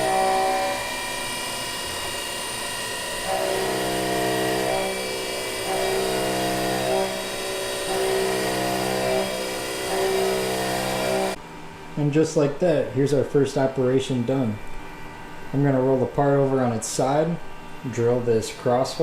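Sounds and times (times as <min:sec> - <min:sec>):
milling machine spindle whine: 0:00.0 - 0:11.4
tool cutting metal: 0:00.0 - 0:11.4.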